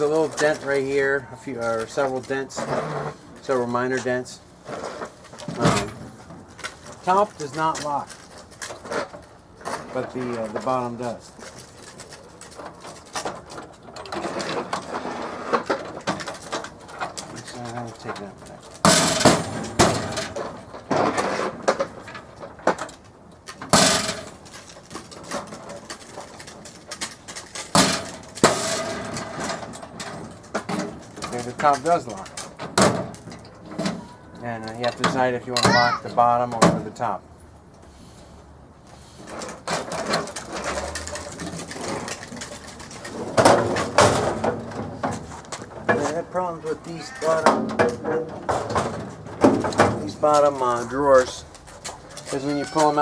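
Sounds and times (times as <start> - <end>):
metal toolbox banging and rattling: 1.8 - 37.1, 39.2 - 53.0
drawers clunking shut: 5.4 - 6.4, 18.0 - 22.9, 39.3 - 46.6, 47.2 - 50.6.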